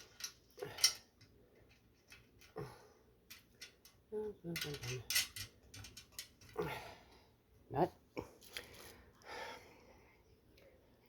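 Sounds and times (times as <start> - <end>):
metal hardware clinking: 0.0 - 2.6, 3.2 - 6.6.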